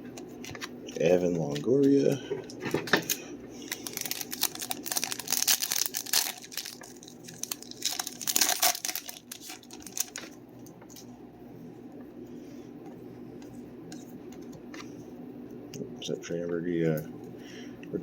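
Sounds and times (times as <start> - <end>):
foil wrapper crinkling: 3.0 - 11.0.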